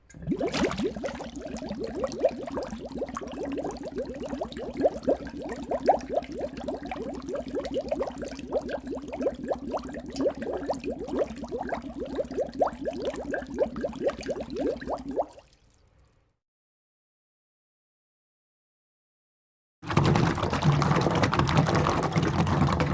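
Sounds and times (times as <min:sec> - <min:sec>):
water bubbling: 0:00.0 - 0:15.6.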